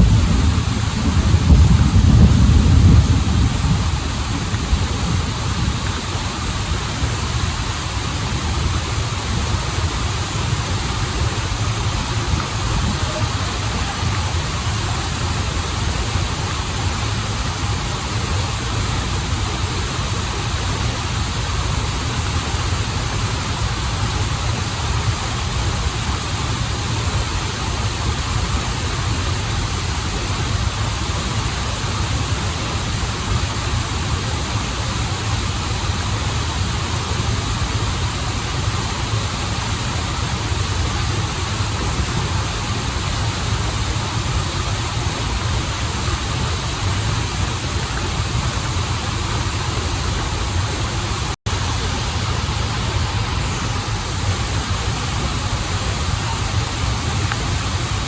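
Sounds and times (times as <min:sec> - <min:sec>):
waterfall and stream rushing: 0:00.0 - 0:58.0.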